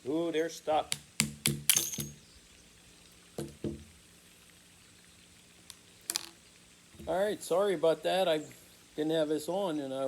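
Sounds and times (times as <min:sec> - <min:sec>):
revolver knocks and metallic clicks: 0:00.9 - 0:02.2.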